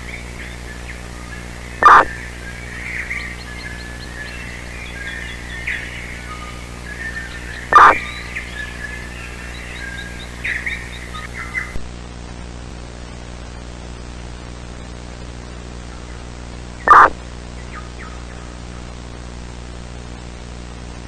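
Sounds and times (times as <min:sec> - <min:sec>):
birds chirping: 0:00.0 - 0:11.8, 0:16.9 - 0:17.1
low hum: 0:00.0 - 0:11.9
static hiss: 0:00.0 - 0:11.9, 0:16.9 - 0:17.2
loud short bird call: 0:01.6 - 0:11.8, 0:16.9 - 0:17.2.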